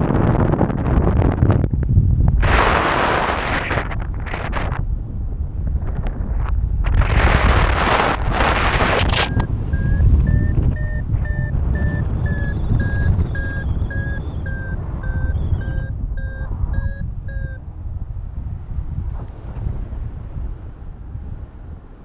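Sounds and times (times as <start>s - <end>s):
wind rushing over microphone: 0.0s - 22.0s
variometer beeping: 9.0s - 17.6s.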